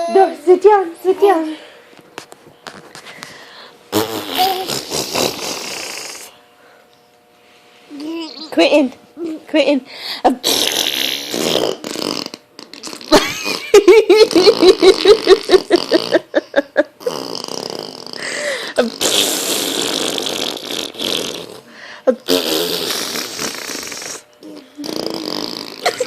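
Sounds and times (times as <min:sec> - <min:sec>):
boy blowing raspberries: 0:03.9 - 0:06.4, 0:10.4 - 0:13.6, 0:17.0 - 0:26.0.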